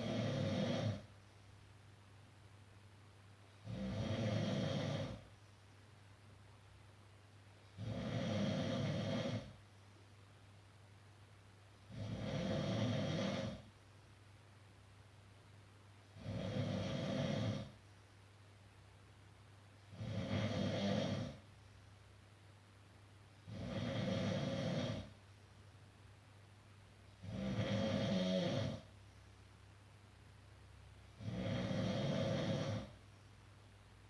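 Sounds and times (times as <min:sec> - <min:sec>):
person snoring: 0:00.0 - 0:01.1, 0:03.6 - 0:05.2, 0:07.8 - 0:09.6, 0:11.9 - 0:13.7, 0:16.2 - 0:17.8, 0:19.9 - 0:21.4, 0:23.4 - 0:25.1, 0:27.2 - 0:28.9, 0:31.2 - 0:33.0.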